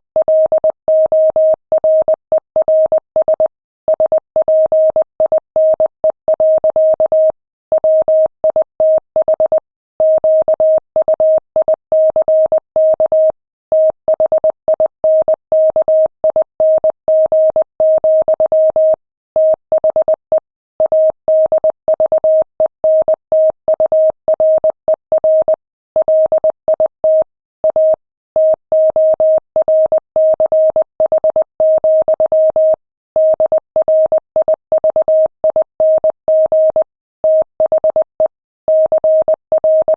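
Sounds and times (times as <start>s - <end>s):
morse code beeps: 25.2s - 39.9s.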